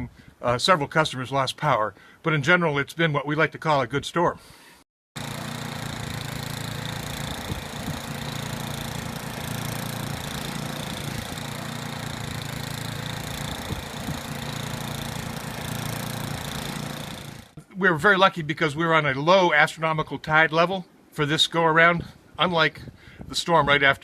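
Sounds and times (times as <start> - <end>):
engine running steadily: 5.2 - 17.6.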